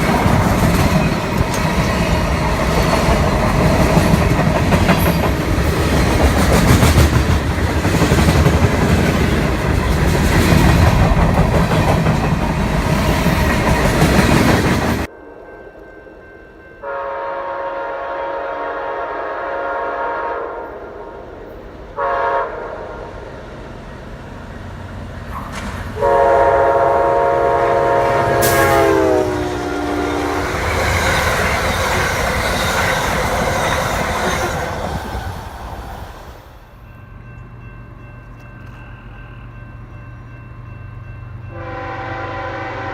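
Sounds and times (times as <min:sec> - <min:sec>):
train rumble and wheel clatter: 0:00.0 - 0:42.9
locomotive chime air horn: 0:16.7 - 0:21.2, 0:22.0 - 0:23.1, 0:26.0 - 0:30.9, 0:41.4 - 0:42.9.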